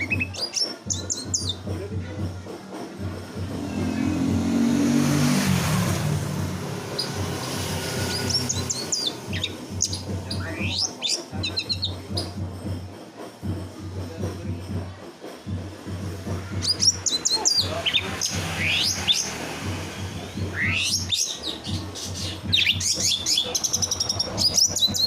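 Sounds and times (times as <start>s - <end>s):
songbirds chirping and trilling: 0.0s - 25.0s
swell of noise: 3.0s - 10.7s.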